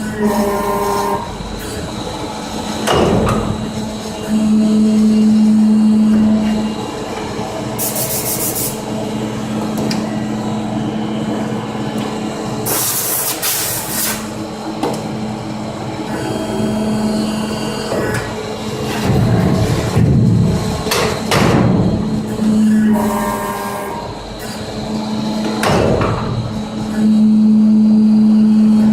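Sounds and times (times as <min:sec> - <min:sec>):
hydraulic press humming: 0:00.0 - 0:28.9
hydraulic hissing bursts: 0:07.8 - 0:08.8, 0:12.6 - 0:14.4.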